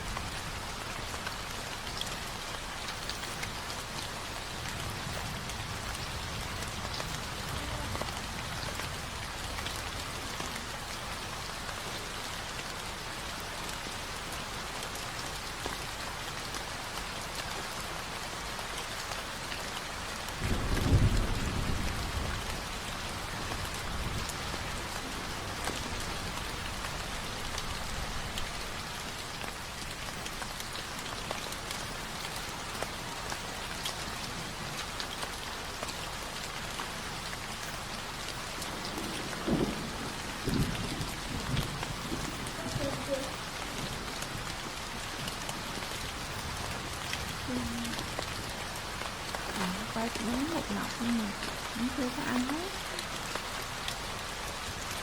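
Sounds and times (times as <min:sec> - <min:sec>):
low rumble of thunder: 0:00.0 - 0:11.5, 0:20.3 - 0:30.3, 0:38.5 - 0:54.8
steady rain: 0:00.0 - 0:55.0.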